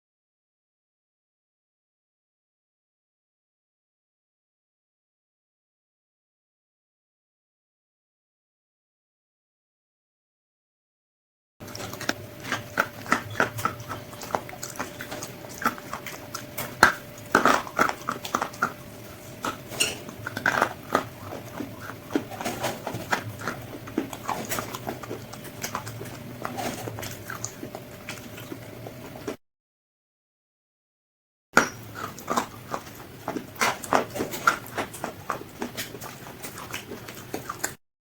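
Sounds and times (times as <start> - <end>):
crispy fried chicken crunching: 11.6 - 29.4, 31.6 - 37.8
faint steady hum: 11.6 - 29.4.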